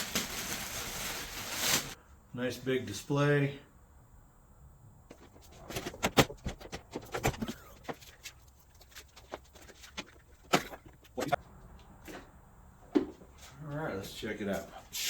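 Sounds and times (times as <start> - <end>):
air compressor being unpacked: 0.0 - 2.0.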